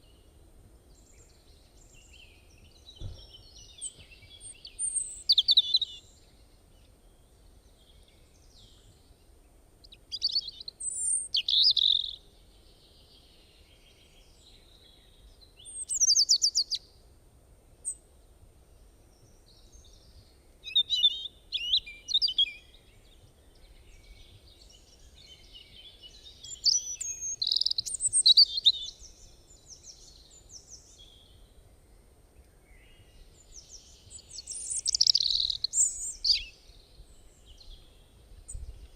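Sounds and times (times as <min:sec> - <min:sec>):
bird warbling song: 0:00.9 - 0:09.2, 0:09.8 - 0:16.9, 0:18.7 - 0:38.9.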